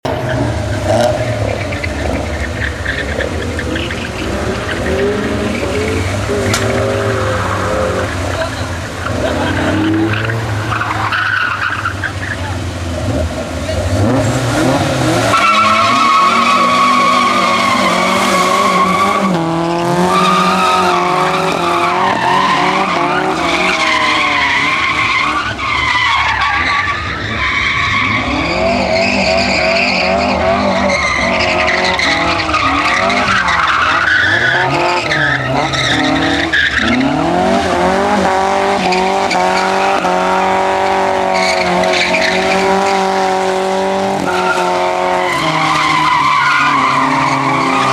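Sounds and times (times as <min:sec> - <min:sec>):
car engine revving hard: 0:00.0 - 0:11.1, 0:12.9 - 0:26.4, 0:27.0 - 0:47.9
tyres squealing: 0:13.7 - 0:47.9.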